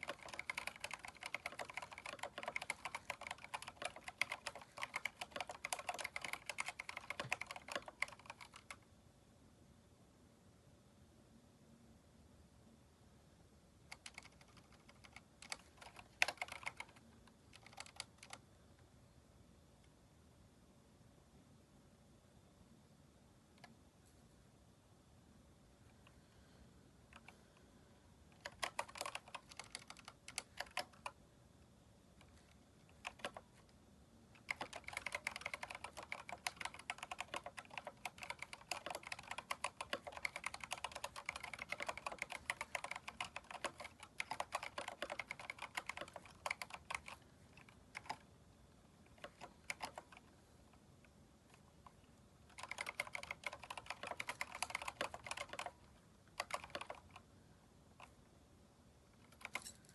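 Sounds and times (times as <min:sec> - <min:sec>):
mechanical keyboard key clicks: 0:00.0 - 0:08.8, 0:28.4 - 0:31.2, 0:34.4 - 0:48.2, 0:52.5 - 0:55.8, 0:56.4 - 0:57.2.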